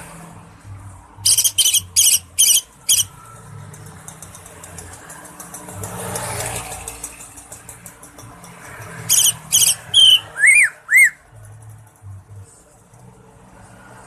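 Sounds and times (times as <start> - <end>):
bird singing sharp bursts: 1.2 - 3.1, 9.1 - 11.2
faint rapid bird trill: 1.2 - 3.2, 9.1 - 11.2.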